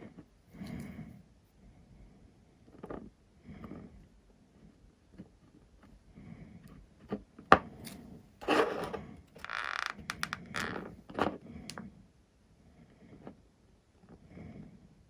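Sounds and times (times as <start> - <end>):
scraping and rubbing: 8.4 - 11.0
clicks: 9.9 - 10.8.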